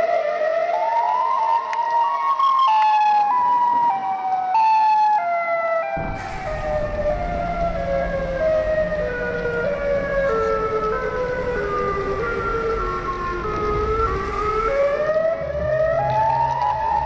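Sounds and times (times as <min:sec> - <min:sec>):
warning siren wailing: 0:00.1 - 0:17.0
low steady noise: 0:06.0 - 0:17.0.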